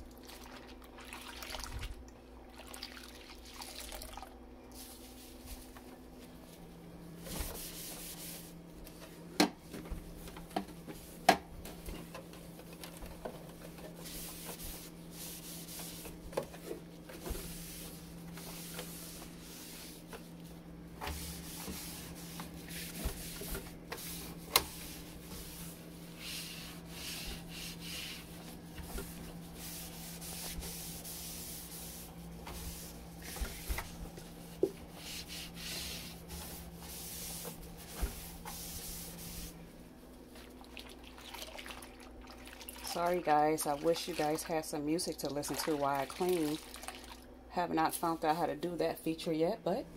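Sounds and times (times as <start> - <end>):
low steady hum: 0.0 - 49.9
scrubbing surfaces: 11.8 - 39.7.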